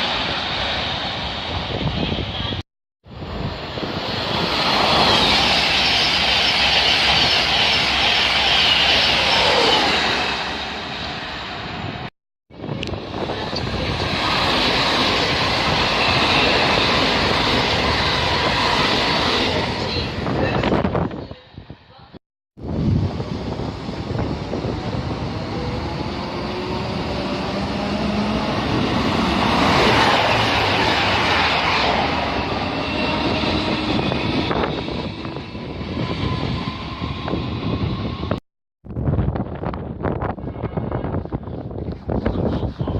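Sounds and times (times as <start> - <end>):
train wheels rushing on rail: 3.3 - 21.7, 22.7 - 38.4.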